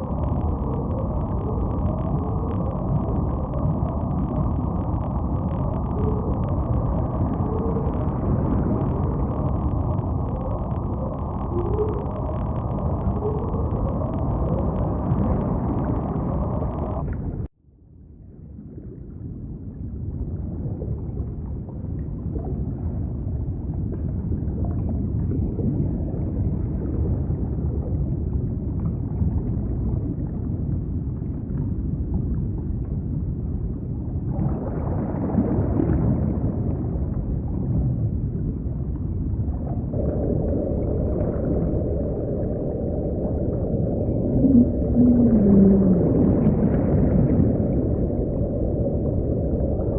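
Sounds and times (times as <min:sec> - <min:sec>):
gliding whale-like calls: 0:00.0 - 0:17.4, 0:39.8 - 0:49.9
low underwater rumble: 0:00.0 - 0:49.9.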